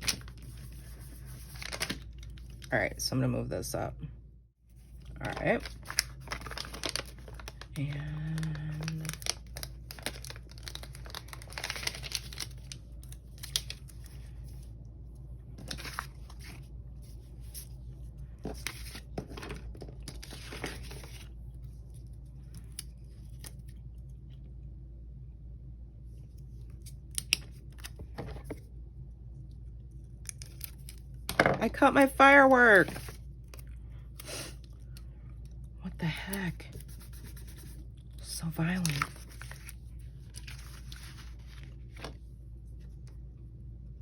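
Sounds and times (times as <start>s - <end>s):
paper rustling and tearing: 0.0s - 2.7s, 5.2s - 7.6s, 8.7s - 14.4s, 15.6s - 17.7s, 18.4s - 21.3s, 38.7s - 42.2s.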